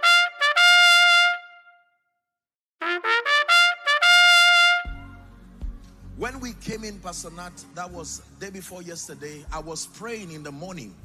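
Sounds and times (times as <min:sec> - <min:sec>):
trumpet fanfare: 0:00.0 - 0:01.8, 0:02.8 - 0:05.2.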